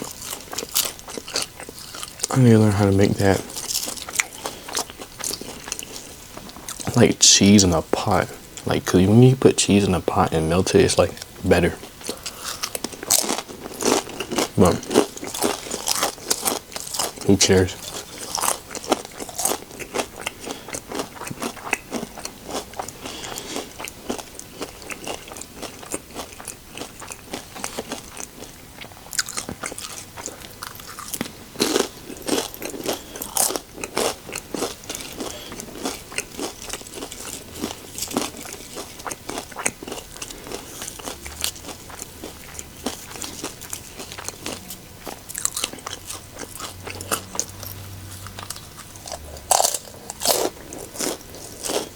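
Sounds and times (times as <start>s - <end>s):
person crunching chips: 0.0s - 8.8s, 10.0s - 51.9s.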